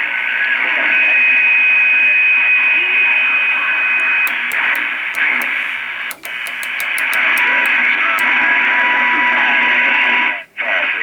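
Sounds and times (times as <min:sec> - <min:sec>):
sharp clicks: 0:04.3 - 0:08.4.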